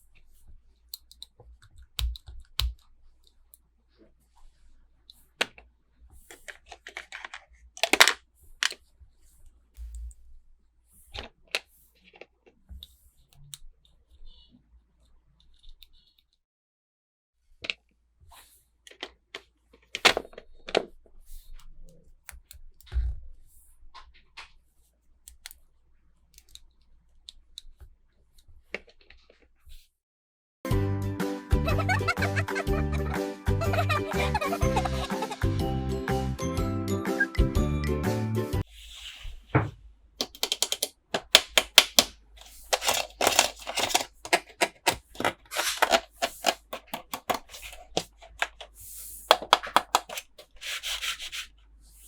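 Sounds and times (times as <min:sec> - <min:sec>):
plastic toy pieces handled: 0:05.1 - 0:08.8, 0:18.9 - 0:21.0, 0:40.2 - 0:51.5
packaging crinkling: 0:40.2 - 0:51.4.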